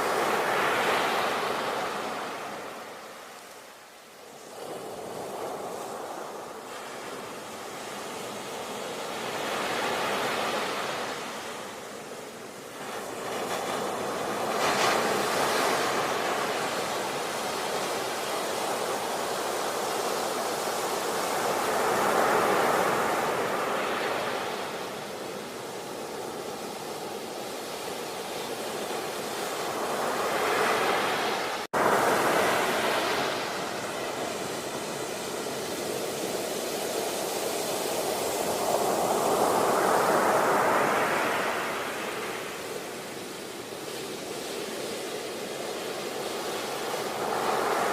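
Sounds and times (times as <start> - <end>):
sea waves breaking on shore: 0.0 - 47.9.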